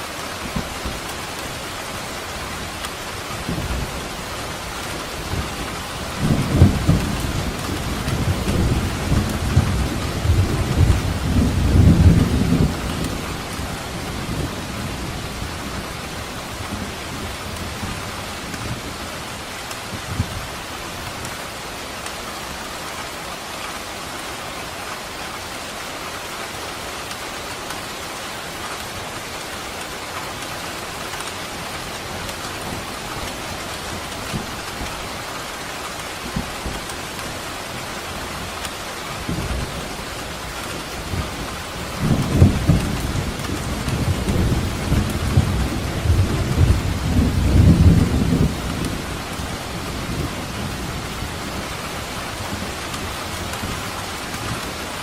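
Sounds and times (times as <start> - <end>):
steady rain falling: 0.0 - 55.0
thunder rumbling: 4.8 - 16.1, 39.2 - 55.0.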